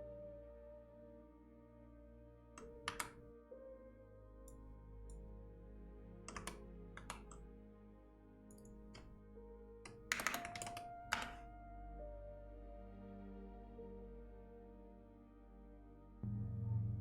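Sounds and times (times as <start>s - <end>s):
soft ambient music: 0.0s - 17.0s
computer keyboard typing: 2.6s - 3.2s, 6.3s - 7.4s, 9.9s - 11.4s.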